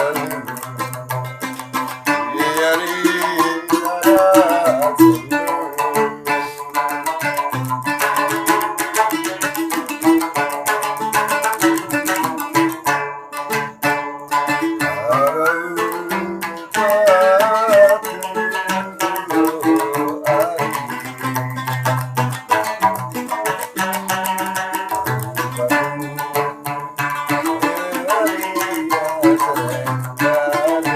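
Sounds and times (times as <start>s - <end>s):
plucked lute runs: 0.0s - 30.9s
higher sliding melody: 15.2s - 21.0s.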